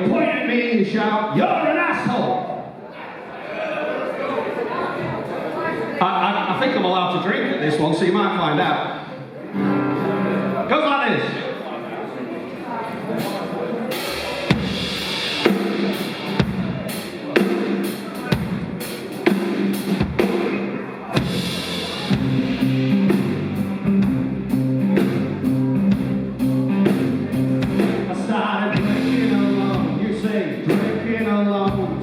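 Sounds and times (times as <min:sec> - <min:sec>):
bass and guitar held notes: 0:09.5 - 0:10.7, 0:21.1 - 0:32.0
drum kit beating: 0:13.2 - 0:32.0.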